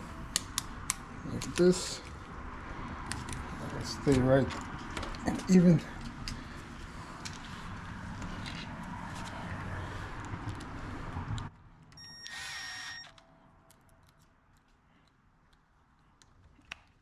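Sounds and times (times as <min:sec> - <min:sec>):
steady tone: 0:00.0 - 0:03.0
cordless drill driving screws: 0:12.2 - 0:13.1.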